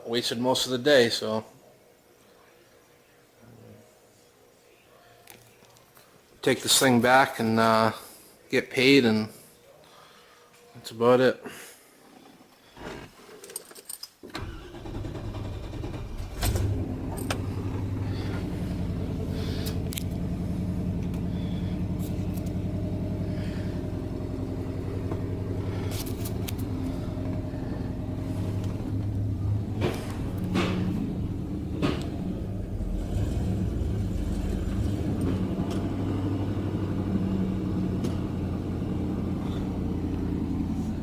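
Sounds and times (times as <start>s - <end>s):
pickup truck engine starting and idling: 14.4s - 41.0s.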